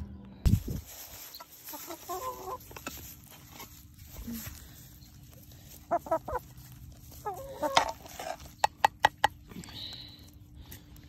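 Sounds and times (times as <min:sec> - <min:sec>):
chickens clucking: 0:01.1 - 0:09.4.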